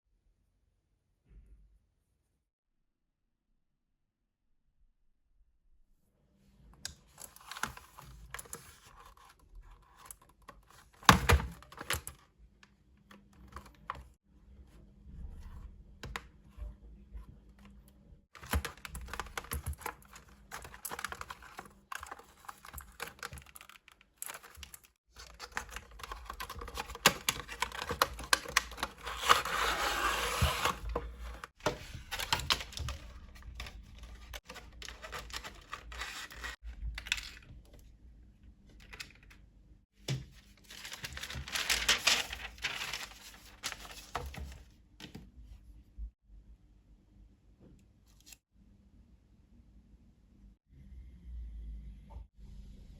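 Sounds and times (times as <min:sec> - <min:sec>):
crinkling tearing and scraping: 0:18.4 - 0:37.4, 0:40.6 - 0:44.4.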